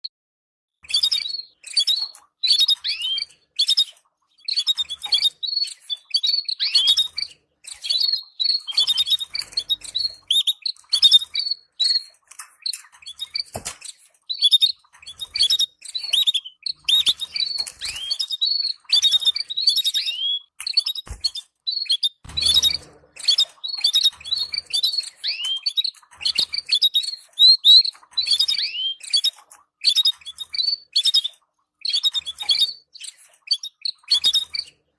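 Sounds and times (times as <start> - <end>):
canaries chirping: 0.8 - 34.9.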